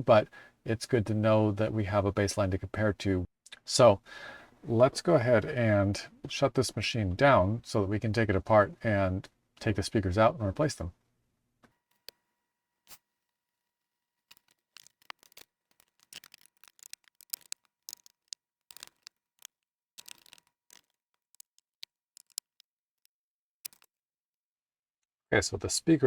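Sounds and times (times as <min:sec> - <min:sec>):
small tools and screws clicking: 0:11.9 - 0:12.2, 0:14.3 - 0:24.0.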